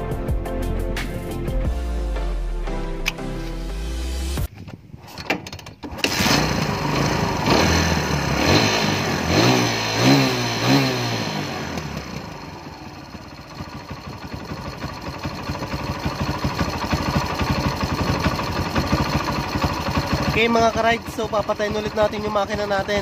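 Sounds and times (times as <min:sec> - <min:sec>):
motorcycle engine revving and idling: 0:05.9 - 0:23.0.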